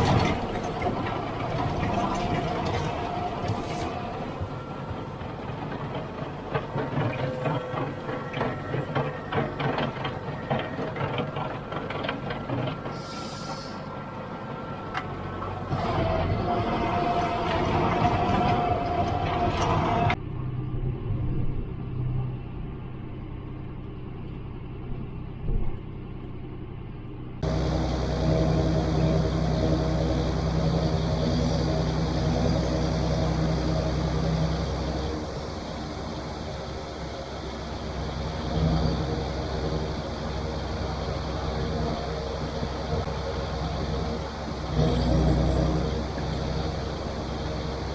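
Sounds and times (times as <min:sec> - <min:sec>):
tractor diesel engine running: 0:00.0 - 0:20.5, 0:22.7 - 0:47.9
rapid uneven clatter of knocks: 0:04.9 - 0:13.0.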